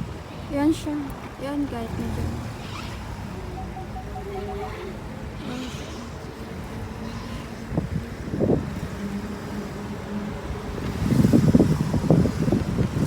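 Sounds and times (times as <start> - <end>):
car cabin hum: 0.9 - 5.3.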